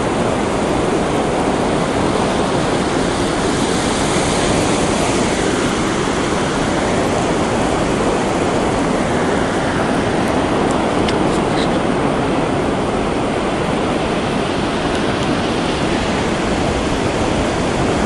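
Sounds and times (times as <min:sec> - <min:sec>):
surf breaking on beach: 0:00.0 - 0:18.0.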